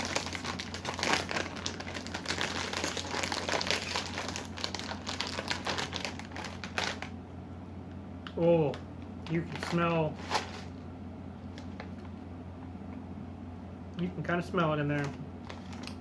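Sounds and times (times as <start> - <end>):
plastic chip bag crinkling: 0.0 - 7.2, 8.6 - 10.8, 11.4 - 12.2, 15.0 - 16.0.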